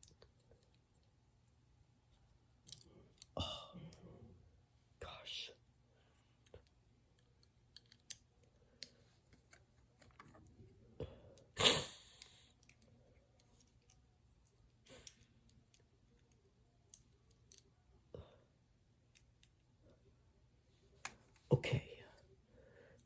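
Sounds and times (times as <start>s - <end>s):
plastic toy parts clicking: 6.6s - 10.4s, 15.0s - 17.7s.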